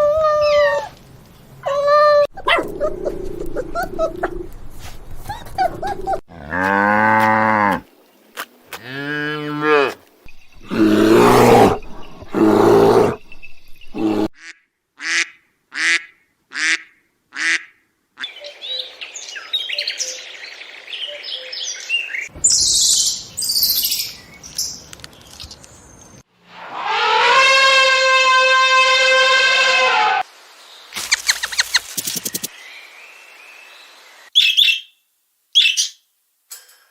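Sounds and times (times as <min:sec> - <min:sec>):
low drawn-out animal calls: 0:01.6 - 0:04.6, 0:26.6 - 0:30.2
rustling: 0:02.5 - 0:08.6
high bird chirping: 0:34.4 - 0:35.0, 0:35.6 - 0:36.0.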